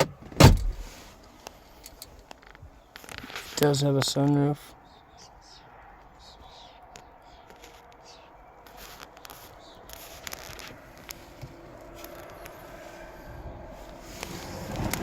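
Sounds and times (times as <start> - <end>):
handling clicks and rustling: 0.0 - 4.6, 6.9 - 12.9, 13.8 - 15.0.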